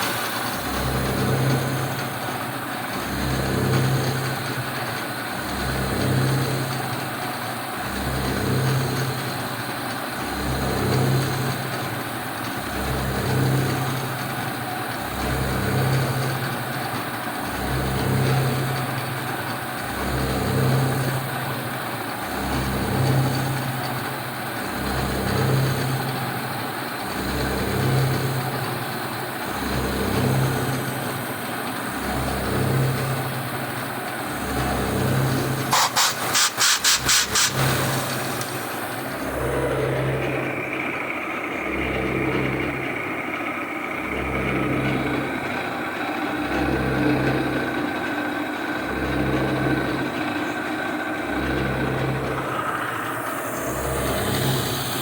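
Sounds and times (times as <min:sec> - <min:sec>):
milling machine cutting steel: 0:29.4 - 0:43.1, 0:44.0 - 0:55.0
sharp pulses: 0:35.7 - 0:38.1.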